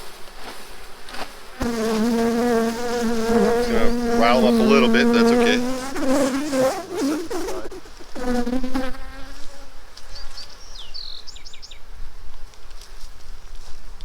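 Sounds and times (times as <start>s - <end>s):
honeybees buzzing: 0.6s - 10.4s.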